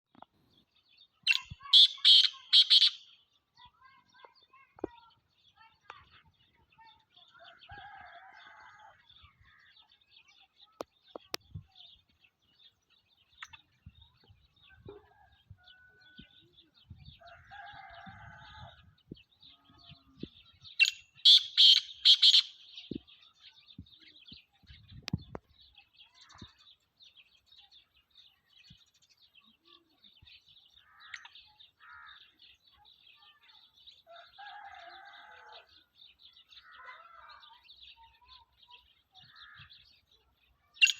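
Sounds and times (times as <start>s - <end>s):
bird calling harsh grating notes: 1.3s - 3.0s, 20.8s - 22.6s.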